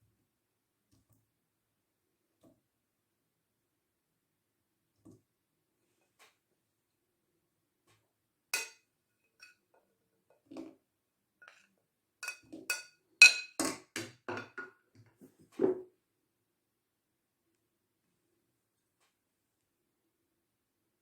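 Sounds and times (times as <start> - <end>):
kitchenware clinking: 8.6 - 9.6, 11.4 - 14.8.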